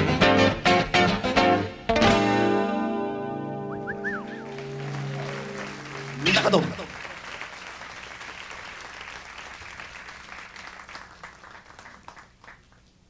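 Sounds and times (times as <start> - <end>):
audience applauding: 4.0 - 13.0.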